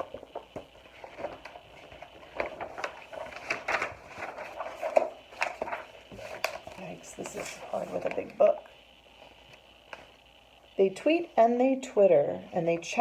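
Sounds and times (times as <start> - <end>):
short paper crinkles and taps: 0.0 - 8.3
paper page rustling: 0.0 - 8.6.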